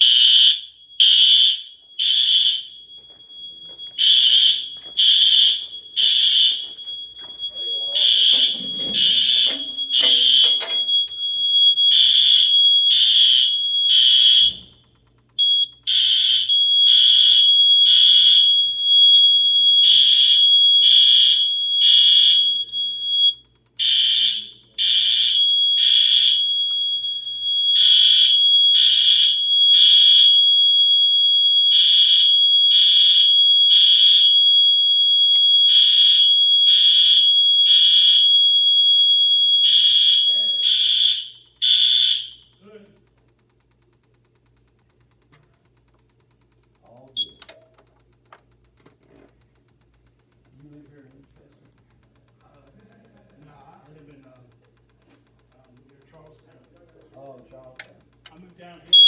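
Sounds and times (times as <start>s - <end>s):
fire alarm horn blasts: 0.0s - 42.6s.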